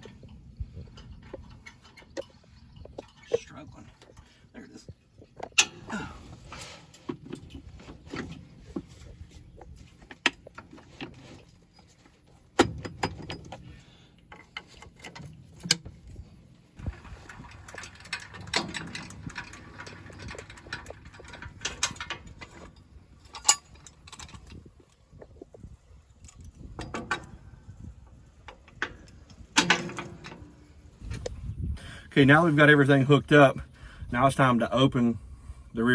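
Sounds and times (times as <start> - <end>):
metal clicks and clanks: 0.0 - 4.3, 5.2 - 11.8, 12.6 - 16.2, 16.8 - 25.6, 26.2 - 27.5, 28.4 - 31.4.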